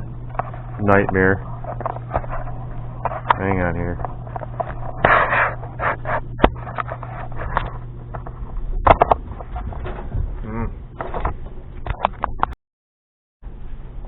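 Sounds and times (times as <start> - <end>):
low hum: 0.0 - 12.6.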